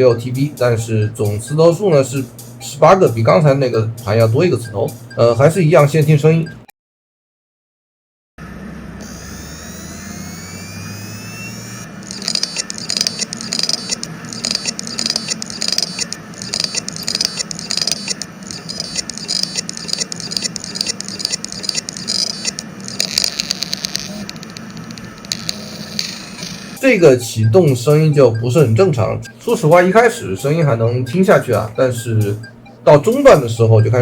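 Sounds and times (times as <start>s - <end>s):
hard drive spinning up whine: 8.4s - 34.0s
hard drive heads clicking: 11.9s - 33.8s.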